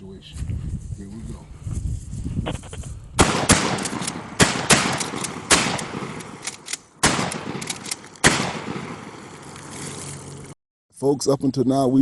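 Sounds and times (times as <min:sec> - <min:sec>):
shotgun shots ringing out: 0:03.2 - 0:09.2
shotgun pump clicks: 0:03.8 - 0:08.3.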